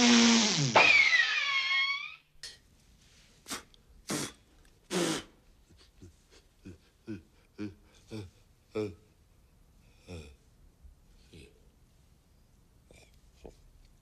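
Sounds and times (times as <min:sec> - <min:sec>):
loud drawn-out swooping cry: 0:00.0 - 0:02.2
short sharp sneezes: 0:03.5 - 0:05.4.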